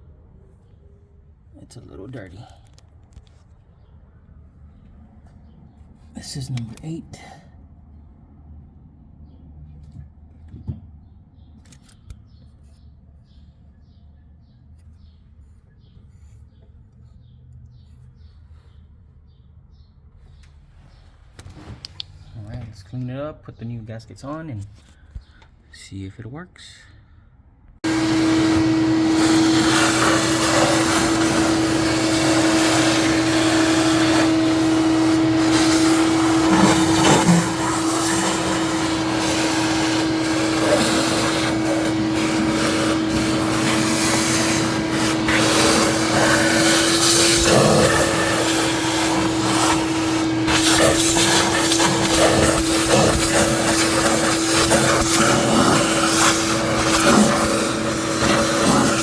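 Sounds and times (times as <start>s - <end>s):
small motor-driven tool running: 27.8s - 59.0s.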